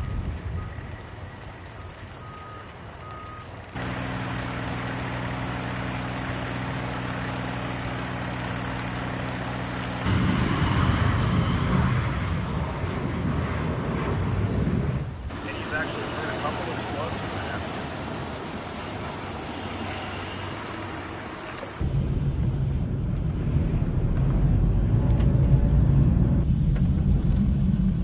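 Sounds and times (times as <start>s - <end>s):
engine humming: 0.0s - 28.0s
rough low rumble: 3.8s - 16.4s, 21.8s - 28.0s.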